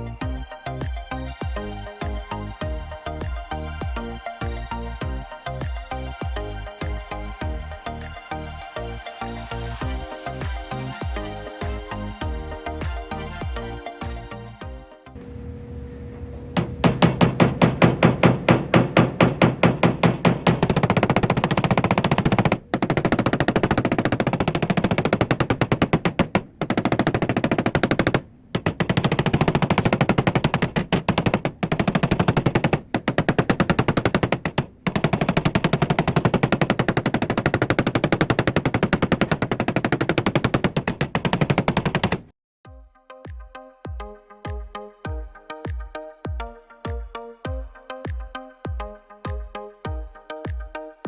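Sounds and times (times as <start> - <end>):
music: 0.0 - 15.2, 42.6 - 51.0
rapid hammering on steel panel: 15.2 - 42.3.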